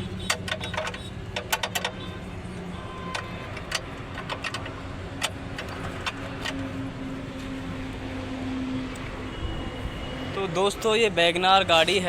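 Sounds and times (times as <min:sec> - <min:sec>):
car engine humming: 0:00.0 - 0:12.0.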